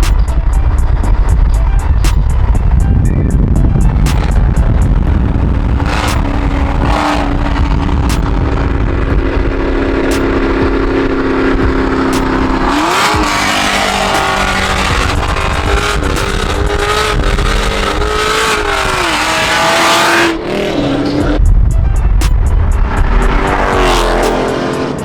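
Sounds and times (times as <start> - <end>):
car engine accelerating: 0.0 - 25.0
road and wind noise: 0.0 - 25.0.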